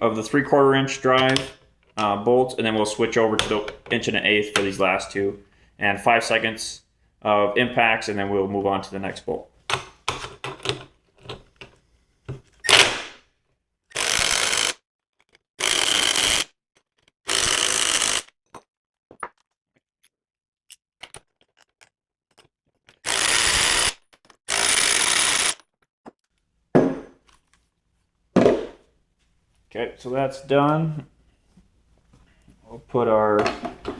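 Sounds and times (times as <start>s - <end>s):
impact driver hammering: 1.2s - 1.6s.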